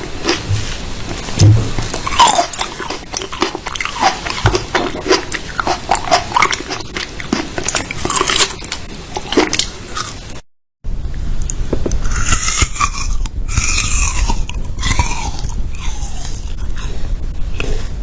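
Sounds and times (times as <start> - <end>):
dog chewing and biting: 1.7 - 10.2.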